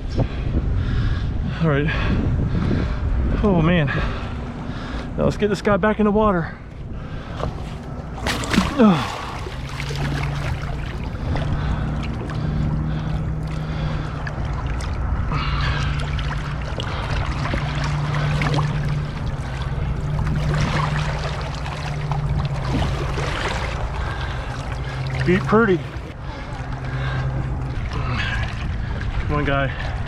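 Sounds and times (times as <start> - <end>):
boat motor idling: 6.0 - 30.0
water lapping: 6.4 - 30.0.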